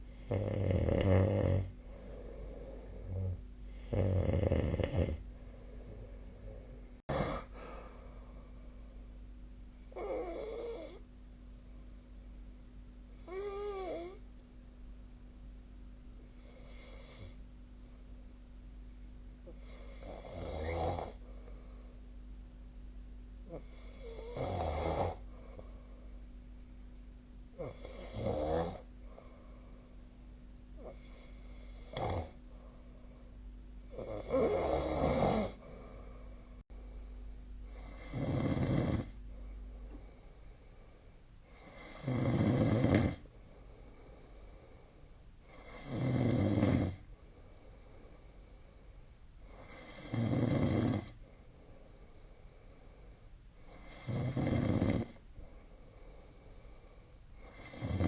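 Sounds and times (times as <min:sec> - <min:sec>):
faint steady hum: 0:00.0 - 0:58.0
person snoring: 0:00.2 - 0:07.9, 0:09.9 - 0:11.0, 0:13.2 - 0:14.2, 0:19.5 - 0:21.2, 0:23.5 - 0:25.2, 0:27.6 - 0:28.9, 0:30.8 - 0:32.4, 0:33.9 - 0:36.2, 0:37.7 - 0:39.2, 0:41.5 - 0:43.3, 0:45.5 - 0:47.0, 0:49.5 - 0:51.2, 0:53.7 - 0:55.2, 0:57.4 - 0:58.0.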